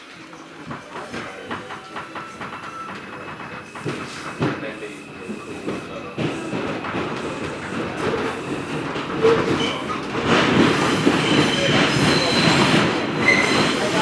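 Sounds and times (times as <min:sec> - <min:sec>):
rumble of wheels on rail: 0:00.0 - 0:14.0
high wheel squeals: 0:10.8 - 0:14.0.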